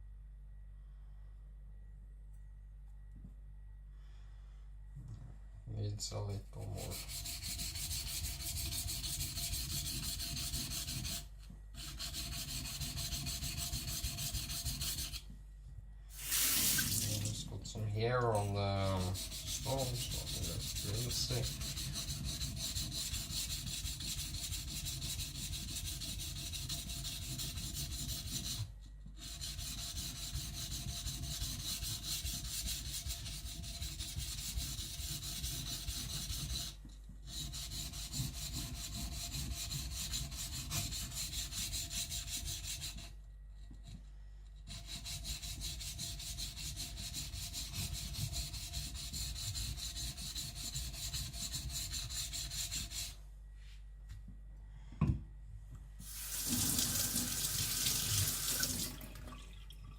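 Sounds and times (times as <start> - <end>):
blade scraping on whetstone: 18.8 - 28.6.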